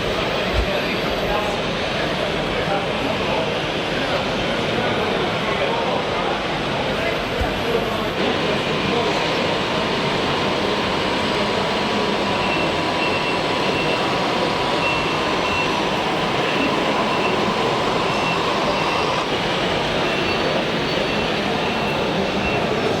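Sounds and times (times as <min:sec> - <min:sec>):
faint constant whine: 0:07.0 - 0:23.0
faint high beeps: 0:08.2 - 0:23.0.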